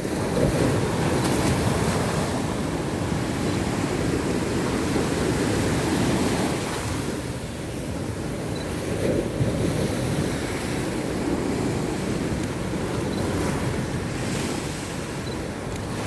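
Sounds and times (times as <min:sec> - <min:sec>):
sea waves breaking on beach: 0:00.0 - 0:16.0
wind buffeting microphone: 0:00.0 - 0:16.0.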